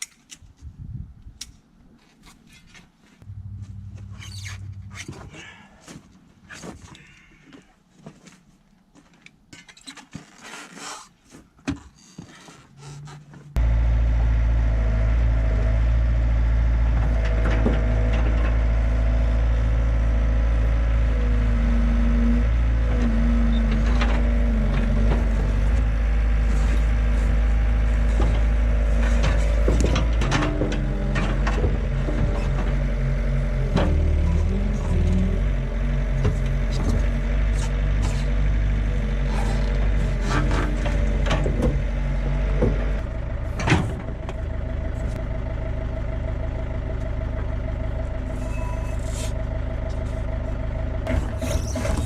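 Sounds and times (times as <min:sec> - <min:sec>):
excavator diesel engine running: 0:03.2 - 0:05.8, 0:12.9 - 0:52.0
hydraulic whine: 0:48.2 - 0:50.2, 0:51.0 - 0:52.0.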